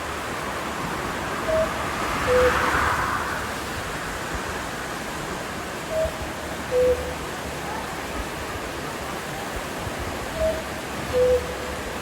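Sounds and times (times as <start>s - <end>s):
cuckoo clock calling: 5.9s - 7.2s, 10.4s - 11.6s.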